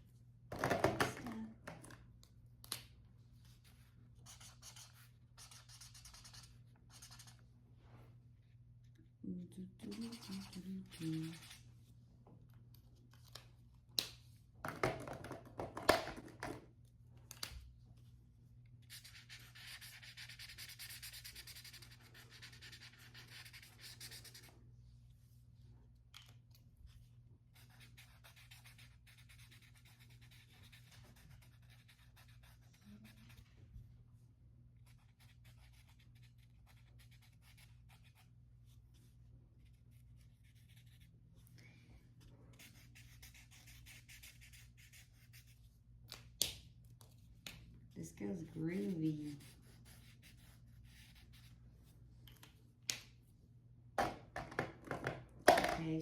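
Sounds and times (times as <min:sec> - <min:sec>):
low steady hum: 0:00.0 - 0:56.0
markers scratching on paper: 0:03.7 - 0:07.4, 0:09.8 - 0:11.7, 0:18.8 - 0:24.5, 0:27.5 - 0:33.6, 0:34.8 - 0:41.1, 0:42.5 - 0:45.7, 0:48.2 - 0:51.5.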